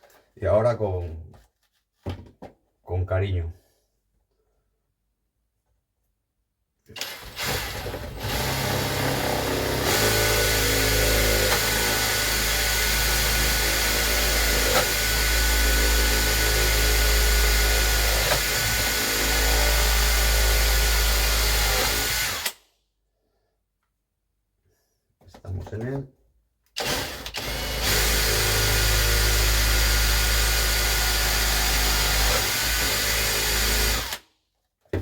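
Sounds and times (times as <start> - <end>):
power drill whining: 7.0 - 22.6, 26.8 - 34.2.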